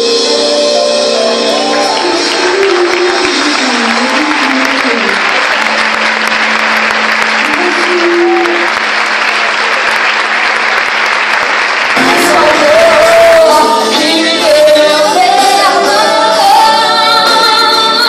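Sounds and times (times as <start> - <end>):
congregation applauding: 1.3 - 15.0.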